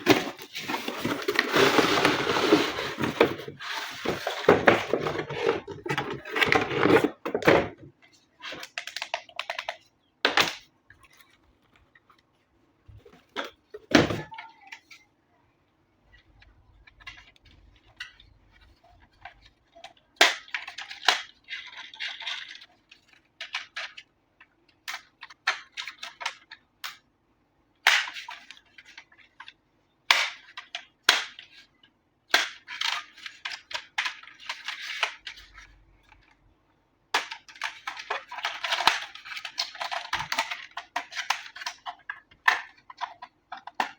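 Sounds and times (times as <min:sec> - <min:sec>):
packaging rustling: 0:00.0 - 0:07.4.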